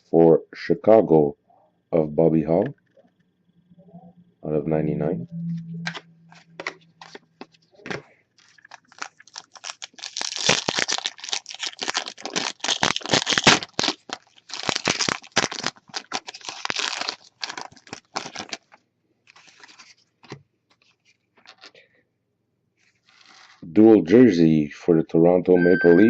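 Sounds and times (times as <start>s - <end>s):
foil wrapper crinkling and tearing: 8.4s - 21.8s, 22.9s - 23.6s.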